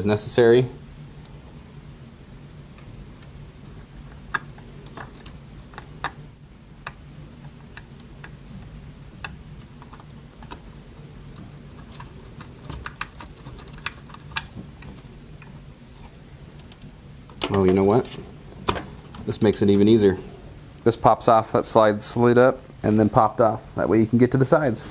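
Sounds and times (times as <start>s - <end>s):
small parts clicking: 9.2s - 17.6s.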